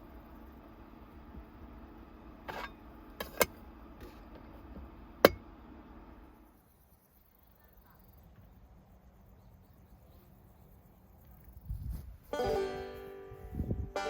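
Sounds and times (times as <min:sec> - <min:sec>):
portable cooler humming: 0:00.0 - 0:06.4.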